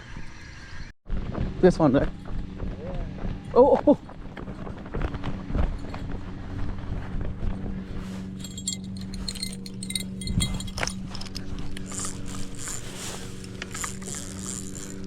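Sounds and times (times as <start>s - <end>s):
steady low hum: 1.1s - 15.0s
fishing rod bite bell jingling: 8.3s - 15.0s.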